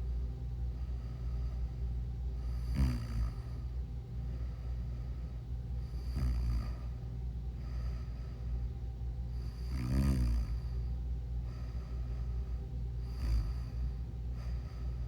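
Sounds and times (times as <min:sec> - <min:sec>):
steady low hum: 0:00.0 - 0:15.0
person snoring: 0:02.5 - 0:03.4, 0:06.0 - 0:06.8, 0:09.4 - 0:10.7, 0:13.0 - 0:13.8.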